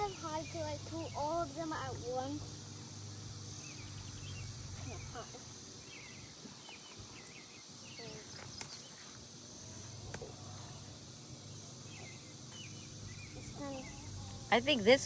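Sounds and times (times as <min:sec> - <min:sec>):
high insect hum: 0:00.0 - 0:15.0
faint bird chirps: 0:03.2 - 0:14.6.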